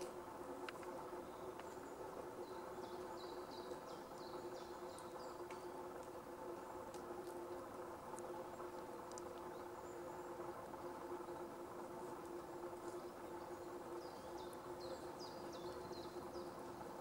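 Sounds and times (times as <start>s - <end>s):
faint ticks: 0.0s - 1.9s, 4.9s - 6.2s, 6.8s - 9.7s
steady low hum: 0.0s - 17.0s
bird chirping: 1.2s - 5.7s, 12.8s - 16.8s.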